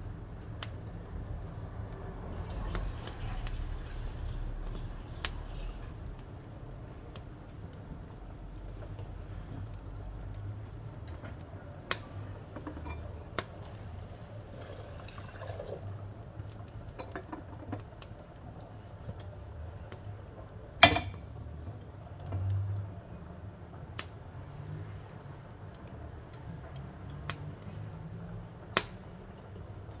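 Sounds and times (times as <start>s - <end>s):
fire crackling and popping: 0.0s - 30.0s
fire rumbling: 0.0s - 30.0s.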